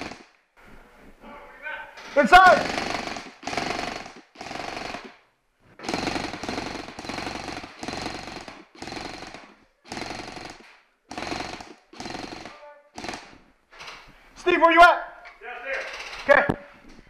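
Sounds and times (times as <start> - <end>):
airsoft gun firing bursts: 0.0 - 0.3, 2.5 - 5.2, 5.8 - 13.4.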